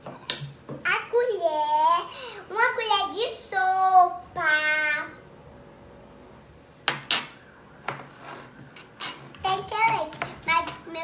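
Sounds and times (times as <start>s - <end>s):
kitchen utensils clinking: 8.8s - 9.4s
child's sing-song voice: 9.5s - 11.0s.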